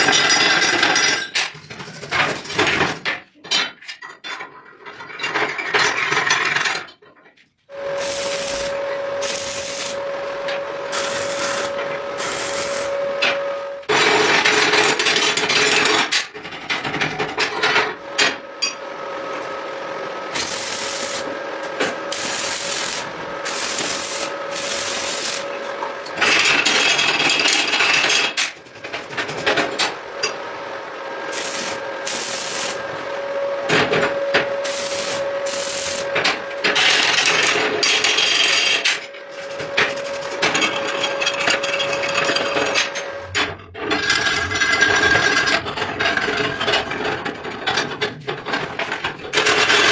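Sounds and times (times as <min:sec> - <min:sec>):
power tool rasping on metal: 0:07.9 - 0:10.1, 0:10.9 - 0:13.2, 0:20.3 - 0:27.2, 0:31.3 - 0:32.9, 0:34.6 - 0:36.2.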